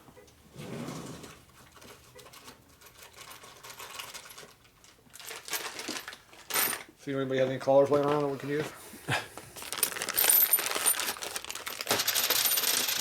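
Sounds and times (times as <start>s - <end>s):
metal parts clinking and rattling: 1.8s - 6.9s, 9.6s - 13.0s.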